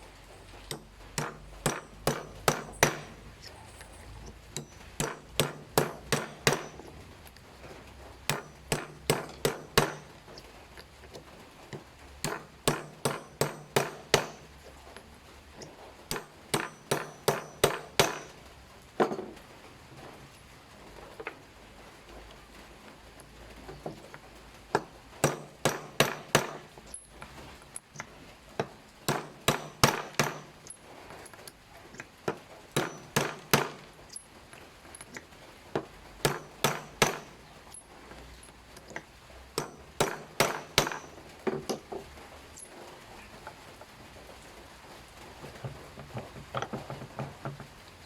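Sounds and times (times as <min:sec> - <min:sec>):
sharp tapping knocks: 0:00.7 - 0:03.3, 0:04.2 - 0:06.9, 0:08.3 - 0:10.4, 0:11.8 - 0:14.5, 0:16.1 - 0:18.4, 0:24.7 - 0:27.0, 0:28.6 - 0:30.8, 0:32.3 - 0:34.2, 0:35.8 - 0:37.5, 0:38.8 - 0:42.0, 0:45.4 - 0:48.0.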